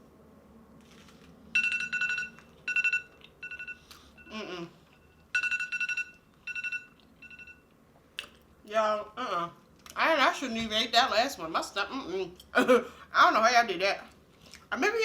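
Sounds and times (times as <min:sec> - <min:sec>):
timer alarm two-tone ringing: 0:01.6 - 0:04.3, 0:05.0 - 0:07.7.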